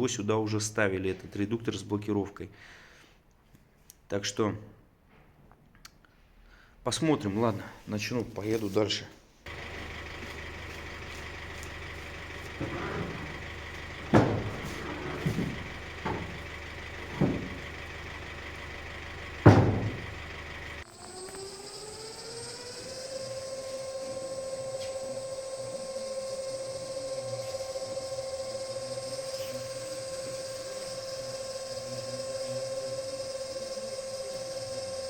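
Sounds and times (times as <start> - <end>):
mechanical whine rising in pitch: 9.5 - 35.0
steady hum: 9.5 - 35.0
metallic knocks and clanks: 11.7 - 20.8.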